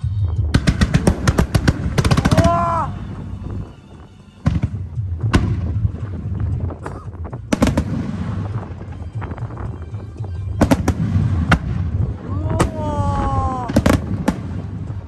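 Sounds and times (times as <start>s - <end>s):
low rumble and crackle: 0.0s - 15.0s
firework shells bursting: 10.6s - 15.0s.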